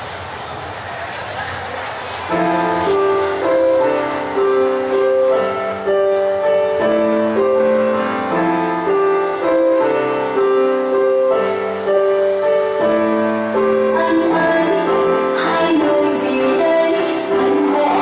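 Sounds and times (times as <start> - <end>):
keyboard broken chords: 2.3 - 18.0.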